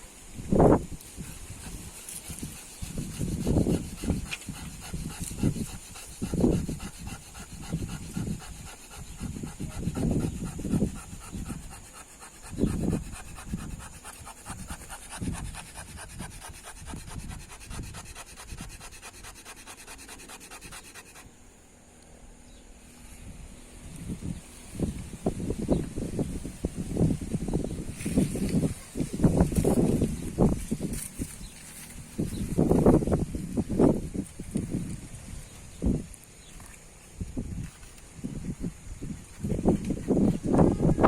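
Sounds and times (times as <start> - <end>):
wooden stick scraping wooden board: 1.0 - 21.3.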